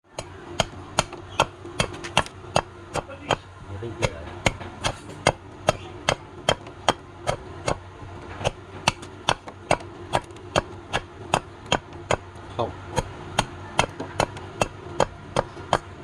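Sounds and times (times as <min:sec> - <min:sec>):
rhythmic chopping of wood: 0:00.1 - 0:12.3, 0:12.9 - 0:16.0.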